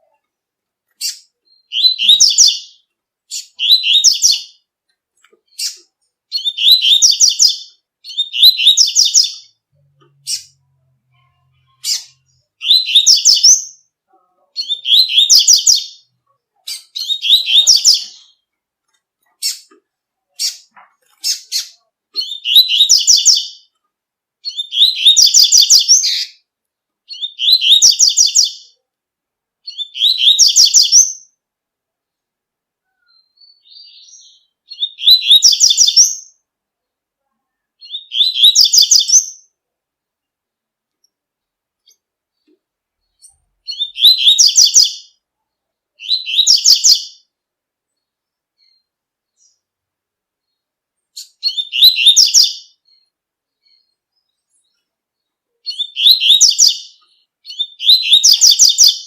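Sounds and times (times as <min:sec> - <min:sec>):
bird singing rapid high phrases: 0:00.9 - 0:04.7, 0:05.4 - 0:23.8, 0:24.4 - 0:26.5, 0:27.1 - 0:28.8, 0:29.6 - 0:31.4, 0:32.9 - 0:36.4, 0:37.8 - 0:39.6, 0:41.8 - 0:45.2, 0:45.9 - 0:47.4, 0:50.4 - 0:59.0.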